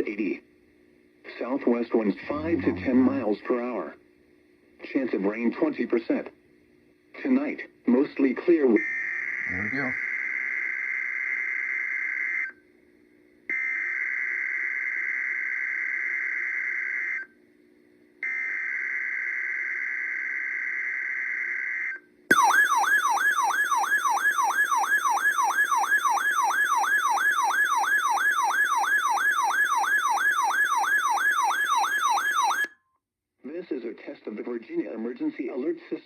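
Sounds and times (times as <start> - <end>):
siren-like alert tone: 9.2 - 10.0, 22.3 - 32.7.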